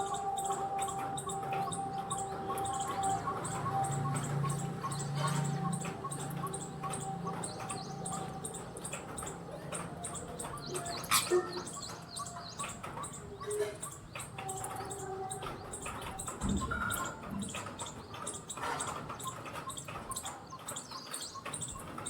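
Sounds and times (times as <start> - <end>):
birds chirping: 0.0 - 22.0.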